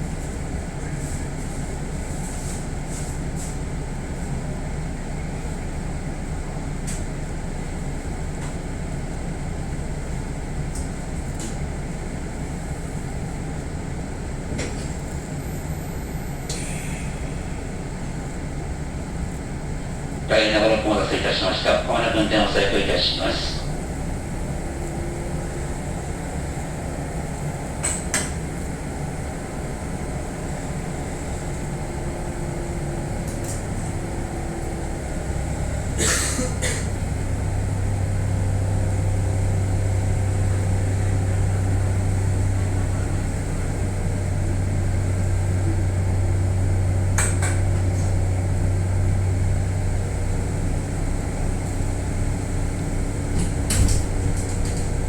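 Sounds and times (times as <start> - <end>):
train equipment low hum: 0.0 - 55.0.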